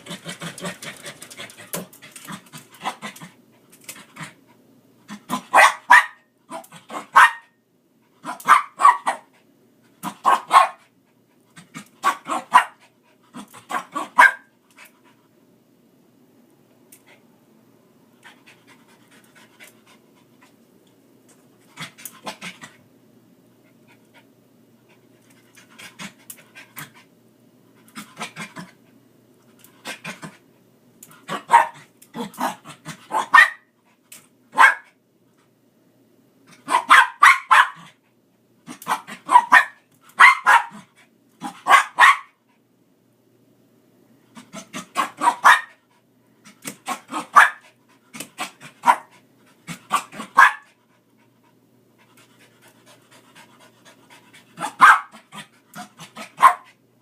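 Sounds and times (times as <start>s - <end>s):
dog panting: 47.7s - 56.4s.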